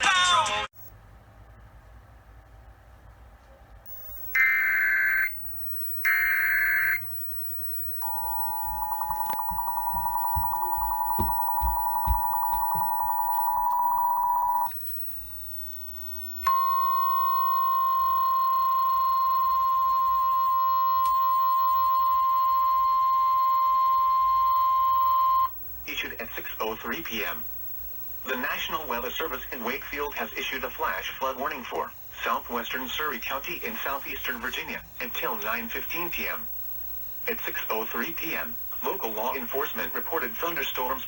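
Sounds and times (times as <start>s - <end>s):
two-tone attention signal: 3.9s - 14.8s, 16.2s - 25.6s
screeching digital data tones: 3.9s - 41.0s
steady single-tone warning alarm: 3.9s - 41.0s.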